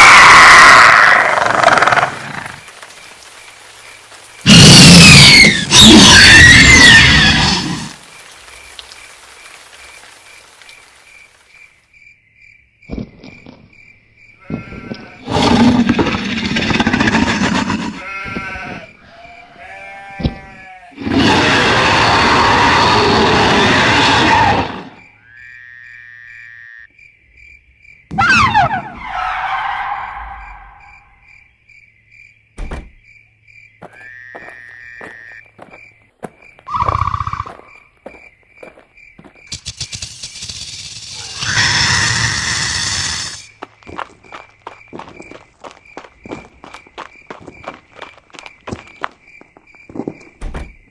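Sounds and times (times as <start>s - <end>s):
insects chirping: 0.0s - 50.9s
higher insect chirp: 29.9s - 50.9s
heavy thunk: 32.6s - 33.0s, 50.4s - 50.8s.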